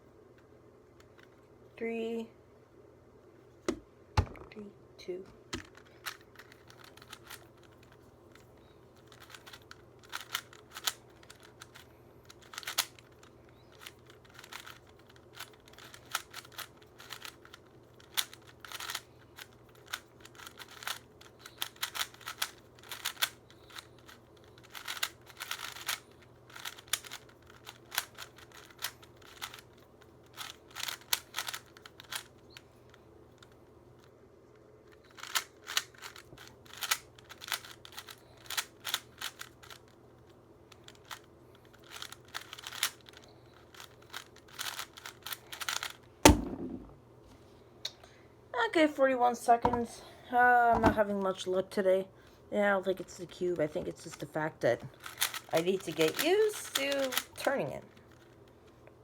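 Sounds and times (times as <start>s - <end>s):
puzzle cube plastic clicks: 5.5s - 34.1s, 34.9s - 46.9s, 52.9s - 59.0s.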